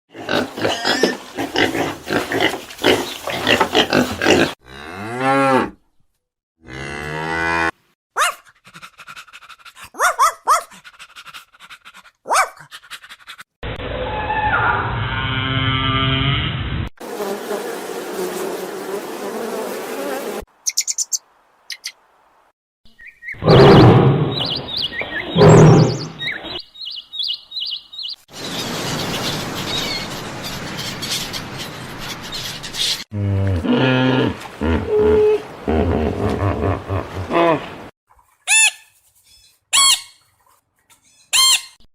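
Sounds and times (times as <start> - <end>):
cow mooing: 4.0 - 5.8, 6.6 - 7.7
small birds chirping: 20.6 - 22.0, 22.9 - 33.1
animal calls: 23.4 - 26.6
low animal call: 25.2 - 26.2.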